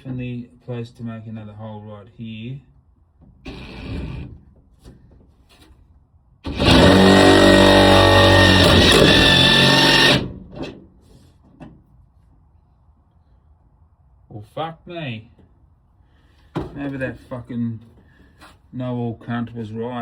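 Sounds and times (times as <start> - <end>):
power drill driving screw into metal: 3.5 - 4.3, 6.5 - 10.8.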